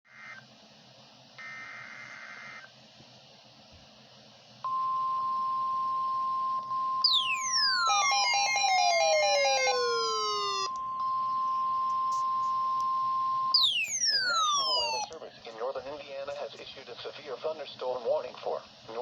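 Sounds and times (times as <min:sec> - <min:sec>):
steady warning alarm tone: 0:06.9 - 0:12.4, 0:13.0 - 0:15.1
falling siren-like sweeps: 0:07.1 - 0:10.7, 0:13.6 - 0:15.1
fast warbling tone: 0:07.1 - 0:10.7, 0:13.6 - 0:15.1
screeching digital data tones: 0:07.1 - 0:10.8, 0:13.6 - 0:15.1.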